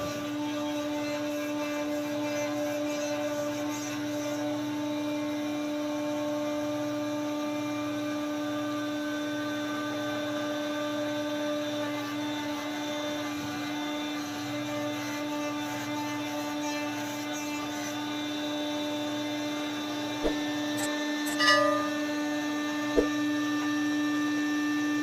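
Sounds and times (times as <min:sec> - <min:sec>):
sawmill machinery humming: 0:11.7 - 0:25.0.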